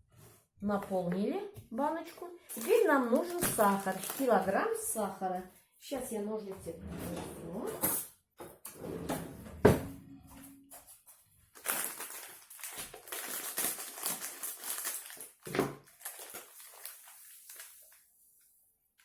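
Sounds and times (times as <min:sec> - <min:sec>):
bag rustling and crinkling: 0:02.5 - 0:04.6, 0:11.5 - 0:18.0.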